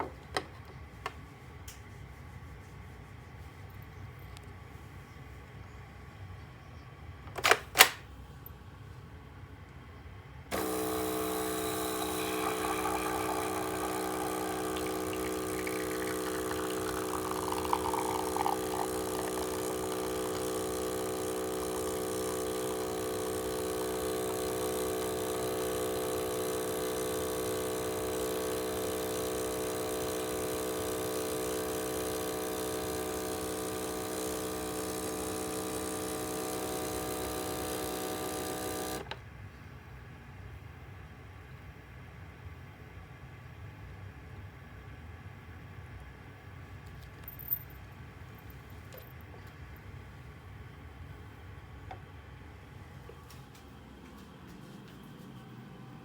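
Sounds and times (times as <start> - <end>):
sharp click: 7.3 - 8.0
coffee machine pump hum and hiss: 10.5 - 56.0.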